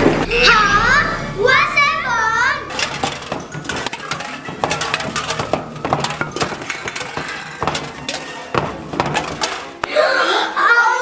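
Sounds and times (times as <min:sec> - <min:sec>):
drink cans tumbling from vending machine: 0:02.7 - 0:10.2.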